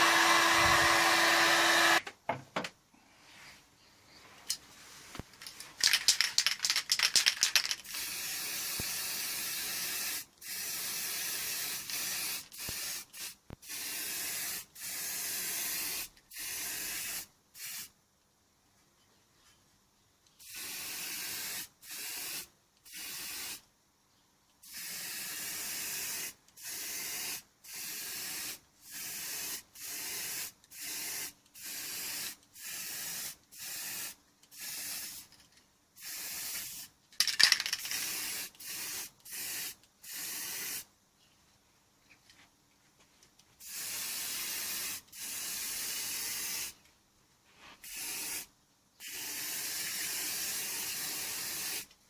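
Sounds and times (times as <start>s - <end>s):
short bursts of spray hiss: 5.8s - 18.0s, 20.4s - 23.6s, 24.6s - 35.3s, 36.0s - 40.9s, 43.6s - 46.8s, 47.5s - 51.9s.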